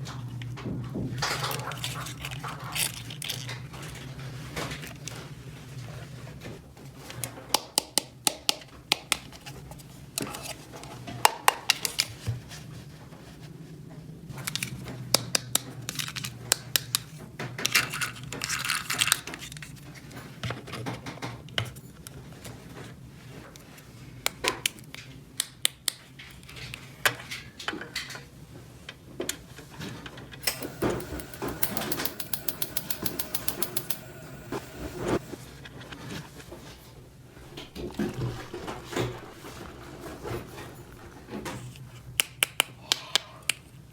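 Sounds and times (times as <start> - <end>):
fast run of clicking: 30.4 - 35.4.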